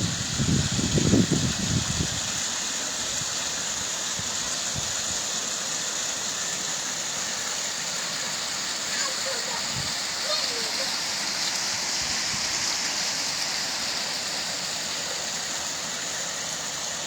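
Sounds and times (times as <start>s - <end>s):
wind buffeting microphone: 0.0s - 2.4s
rain falling: 3.7s - 17.0s.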